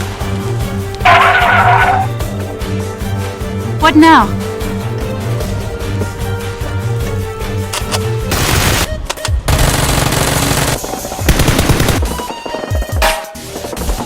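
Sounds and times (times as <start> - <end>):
background music: 0.0 - 14.0
machine-gun fire: 9.5 - 12.1.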